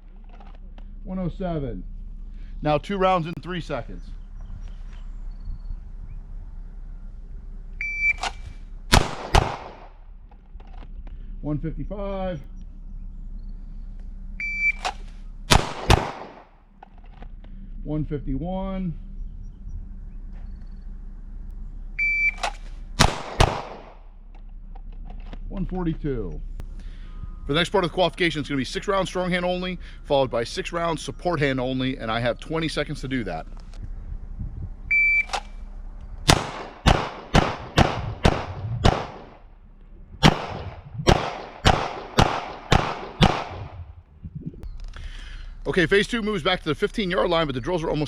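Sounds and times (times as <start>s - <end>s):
shot timer beep: 7.8s - 8.3s, 14.4s - 14.9s, 22.0s - 22.4s, 34.9s - 35.4s
handgun shots: 8.2s - 9.9s, 14.8s - 16.4s, 22.3s - 24.0s, 36.3s - 39.4s, 40.2s - 43.8s.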